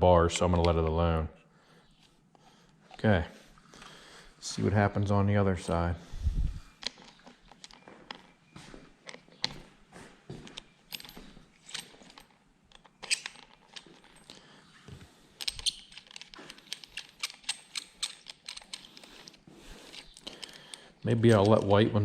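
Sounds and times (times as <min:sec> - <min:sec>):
metal hardware clinking: 0:10.4 - 0:14.5, 0:15.4 - 0:22.0.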